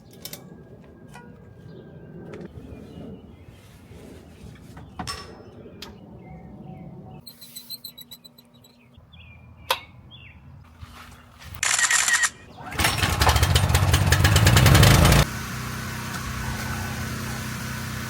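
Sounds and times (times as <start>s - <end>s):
pressure washer engine: 12.6s - 18.0s
water spray: 14.6s - 18.0s.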